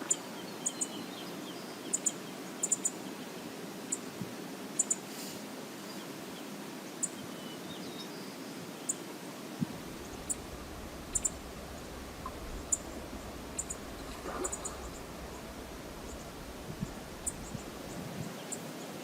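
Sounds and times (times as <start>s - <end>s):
river water rushing: 9.3s - 19.0s.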